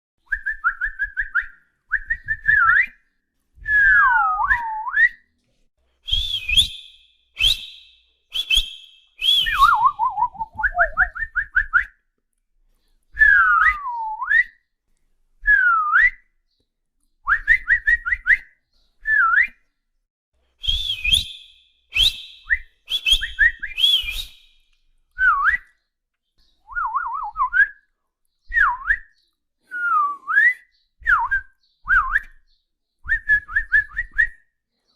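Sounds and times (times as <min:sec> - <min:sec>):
whistling with warbling trills: 0:06.0 - 0:11.9, 0:20.6 - 0:24.6, 0:28.5 - 0:34.4.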